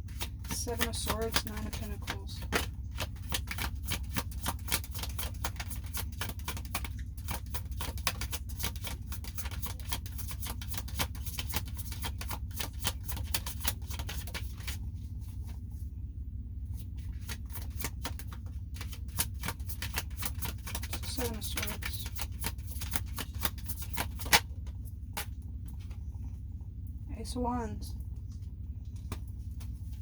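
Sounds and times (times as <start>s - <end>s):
cards shuffling: 0.0s - 14.8s, 17.0s - 24.5s
low hum: 11.4s - 30.0s.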